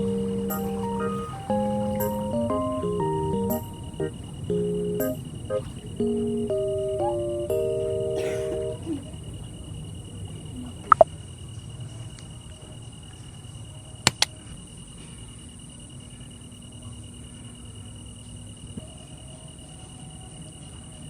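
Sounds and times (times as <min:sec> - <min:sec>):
background music: 0:00.0 - 0:08.8
insects chirring: 0:00.0 - 0:21.0.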